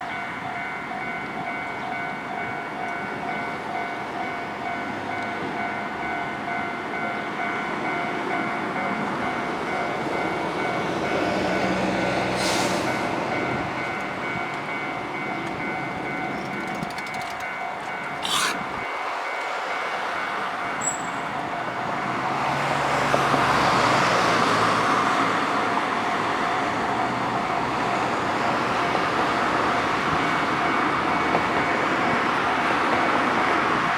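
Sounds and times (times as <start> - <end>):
diesel railcar engine and wheels: 0.0 - 33.9
sharp clatters: 16.3 - 17.6.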